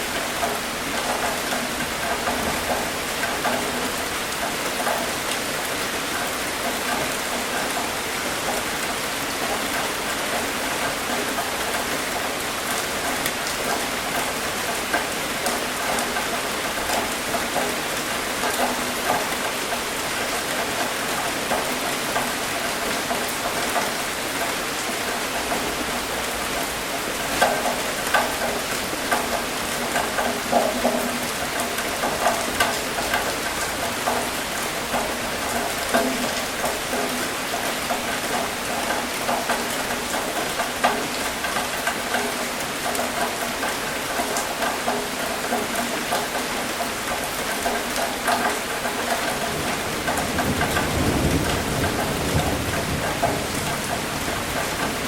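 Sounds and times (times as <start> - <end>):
steady rain falling: 0.0 - 55.0
rumble of thunder: 49.6 - 54.5.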